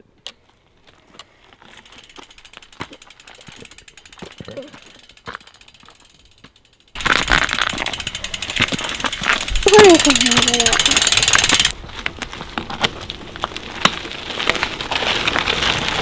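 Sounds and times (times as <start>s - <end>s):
bike freehub clicking rapidly: 1.7s - 11.8s.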